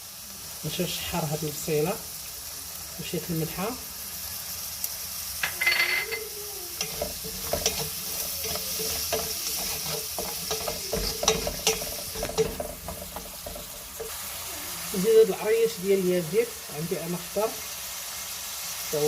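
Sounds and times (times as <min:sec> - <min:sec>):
onion and garlic sizzling in oil: 0:00.0 - 0:19.0
spoon scraping a pot: 0:06.8 - 0:14.2.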